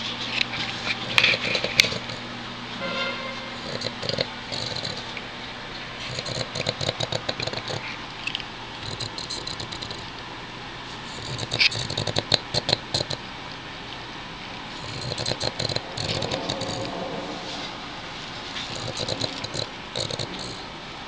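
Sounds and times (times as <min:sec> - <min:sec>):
dog snoring: 0:01.0 - 0:02.3, 0:03.6 - 0:05.2, 0:06.0 - 0:08.0, 0:08.8 - 0:10.1, 0:11.0 - 0:13.2, 0:14.7 - 0:17.8, 0:18.6 - 0:20.7.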